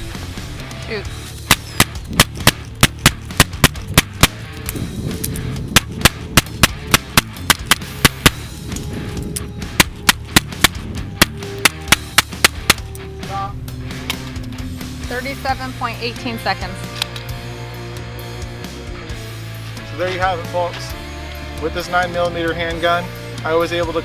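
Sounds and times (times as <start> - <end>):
handgun shots: 1.5 - 4.4, 5.8 - 8.5, 9.8 - 12.9.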